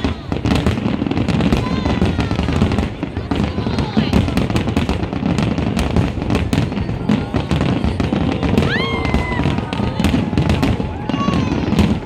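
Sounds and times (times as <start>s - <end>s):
fireworks cracking and crackling: 0.0s - 12.0s
low rumble of fireworks bursts: 0.0s - 12.0s
rising firework whistle: 8.3s - 12.0s.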